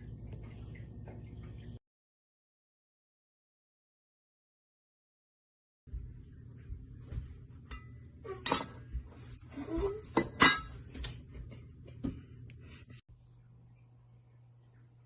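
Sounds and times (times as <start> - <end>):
low steady hum: 0.0 - 1.8, 5.9 - 15.0
dishes and utensils clinking: 7.6 - 9.0, 9.6 - 11.2.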